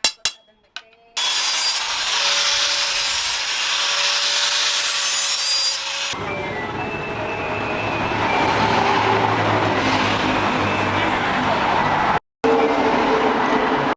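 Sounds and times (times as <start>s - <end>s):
sharp metal strike: 0.0s - 0.5s
power tool grinding steel blade: 1.2s - 6.2s.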